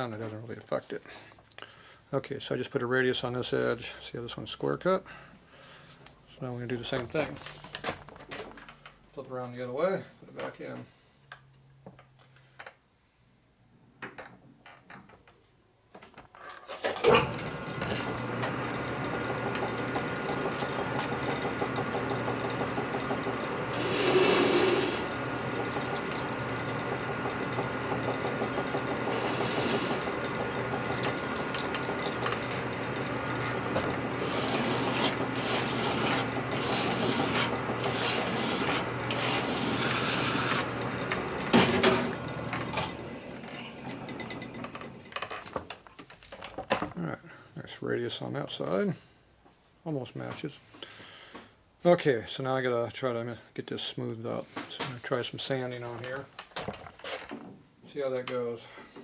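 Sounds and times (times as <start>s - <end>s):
metal lathe running: 17.1s - 45.1s.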